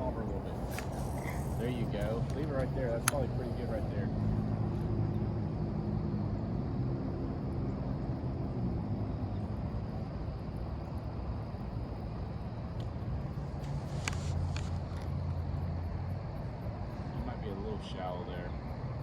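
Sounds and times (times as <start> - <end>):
distant engine drone: 0.0 - 19.0
faint clicks: 0.7 - 3.4.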